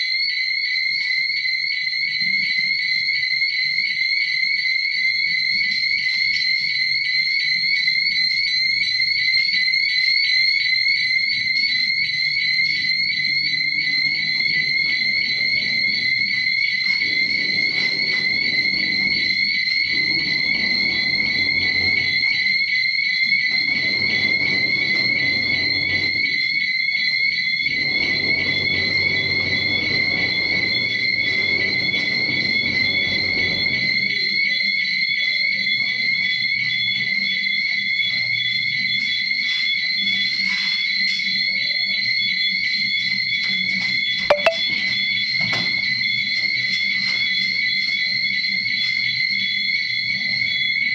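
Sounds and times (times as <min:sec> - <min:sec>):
fire alarm pulsing tone: 0:00.0 - 0:50.9.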